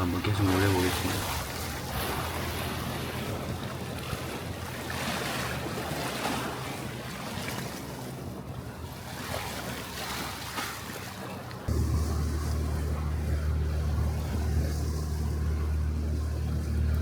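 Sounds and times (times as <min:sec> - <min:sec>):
surf washing against rocks: 0:00.0 - 0:08.2
wind buffeting microphone: 0:00.0 - 0:17.0
low steady hum: 0:11.5 - 0:17.0.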